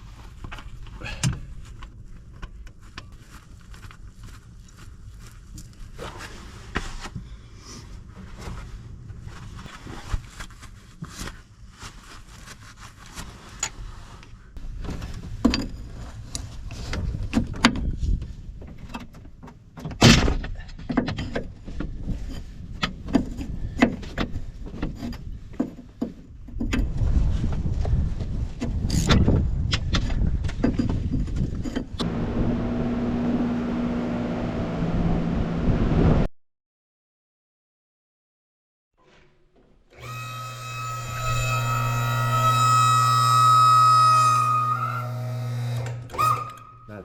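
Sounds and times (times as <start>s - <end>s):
vehicle engine running: 32.0s - 36.0s.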